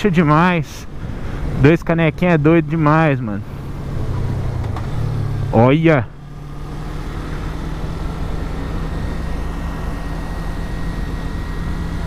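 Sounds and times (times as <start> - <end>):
motorcycle engine running: 3.5 - 12.0.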